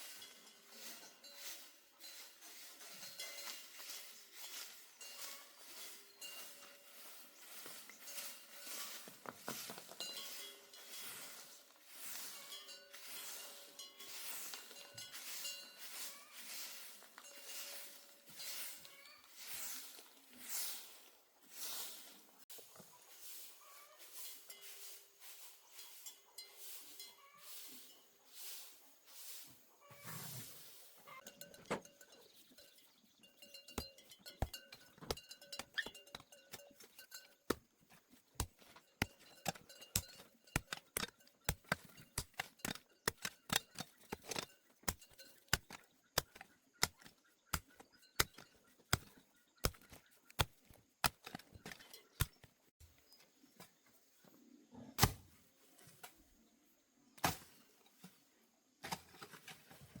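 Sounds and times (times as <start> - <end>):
hand tool chopping thunks: 38.4 - 52.5, 55.0 - 55.2.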